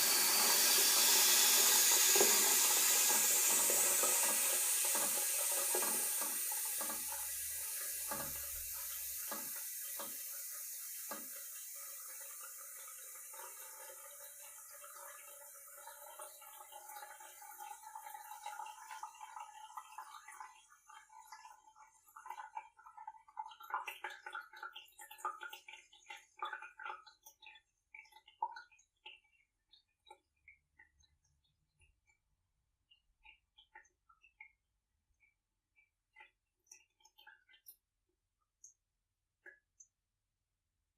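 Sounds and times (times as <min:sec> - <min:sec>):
toilet cistern refilling hiss: 0:00.0 - 0:21.7
water trickles and drips: 0:00.0 - 0:40.0.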